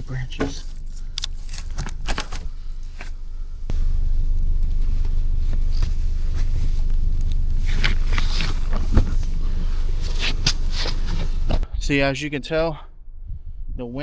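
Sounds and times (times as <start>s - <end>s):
handling rustles and clicks: 0.1s - 3.7s, 4.3s - 11.6s.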